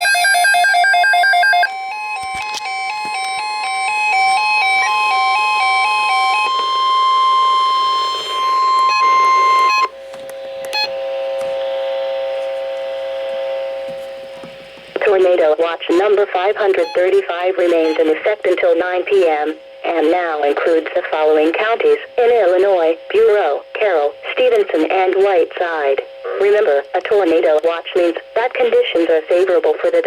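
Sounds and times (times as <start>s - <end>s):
steady high tone: 0.0s - 14.4s
two-pitch electronic trill: 2.8s - 10.0s
stepping beeps: 4.2s - 9.9s, 16.8s - 18.1s.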